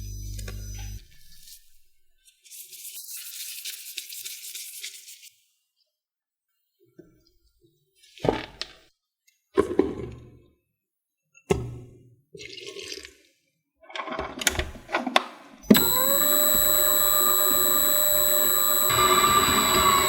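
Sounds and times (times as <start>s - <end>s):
blender motor whine: 15.7s - 20.0s.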